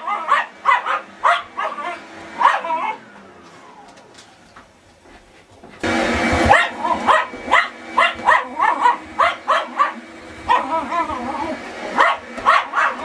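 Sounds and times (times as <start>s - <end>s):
dog barking: 0.0s - 3.0s, 6.5s - 11.2s, 11.9s - 13.0s
vacuum cleaner humming: 0.0s - 13.0s.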